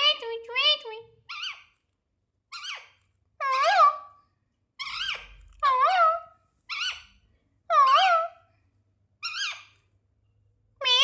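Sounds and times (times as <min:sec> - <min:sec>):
parrot squawking: 0:01.2 - 0:01.8, 0:02.4 - 0:08.5, 0:09.2 - 0:09.9, 0:10.8 - 0:11.0.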